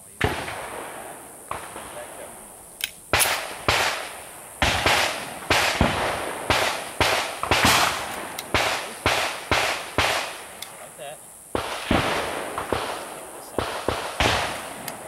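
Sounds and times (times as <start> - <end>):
handgun shots echoing: 1.5 - 10.7.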